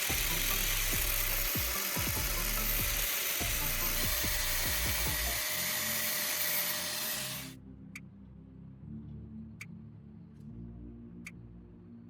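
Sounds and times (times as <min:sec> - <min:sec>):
angle grinder cutting metal: 0:00.0 - 0:07.5
quiet background music: 0:00.0 - 0:12.0.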